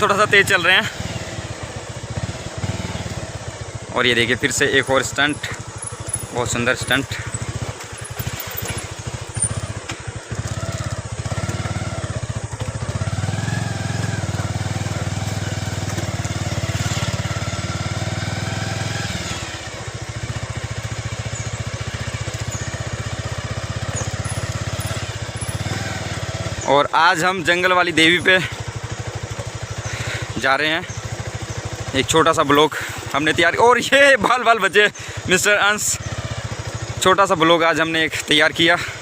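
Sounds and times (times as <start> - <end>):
motorcycle engine running: 0.0 - 39.0.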